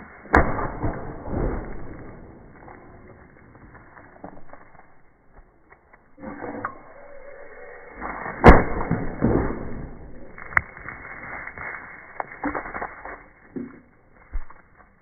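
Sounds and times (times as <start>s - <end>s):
sharp crack: 0.0s - 3.9s, 7.9s - 14.0s.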